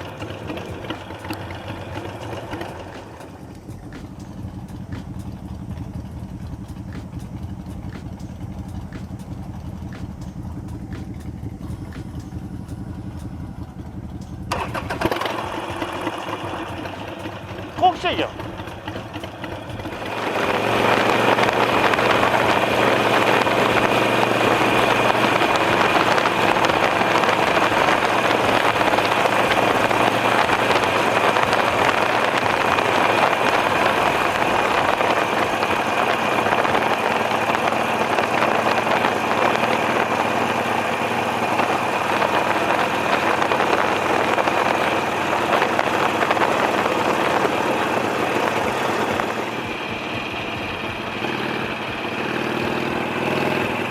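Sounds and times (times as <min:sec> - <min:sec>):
motorcycle engine running: 0:00.0 - 0:53.9
wind noise on microphone: 0:19.9 - 0:40.7, 0:41.6 - 0:51.0.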